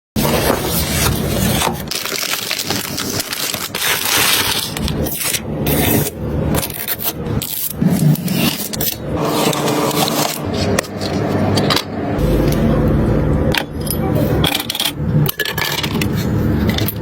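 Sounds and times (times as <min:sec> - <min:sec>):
scraping and crackling handling noises: 0:00.2 - 0:12.6.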